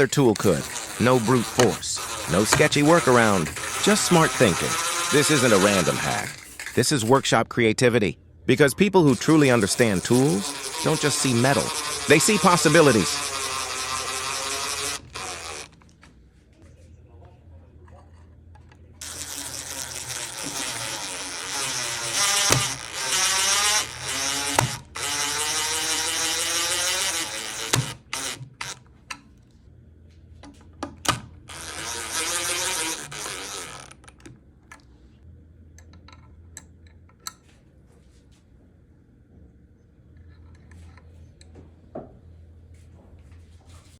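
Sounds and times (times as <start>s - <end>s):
small motor whirring: 0.0s - 7.2s, 9.0s - 15.9s, 19.0s - 28.9s, 31.1s - 34.3s.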